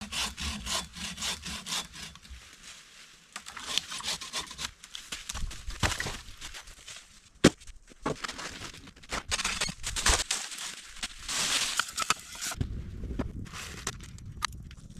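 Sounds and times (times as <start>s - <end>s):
wooden sticks scraping together: 8.2s - 12.6s.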